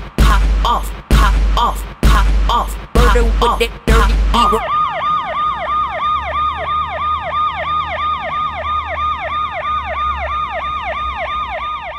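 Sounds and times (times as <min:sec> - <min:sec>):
siren yelping: 0:03.0 - 0:11.9.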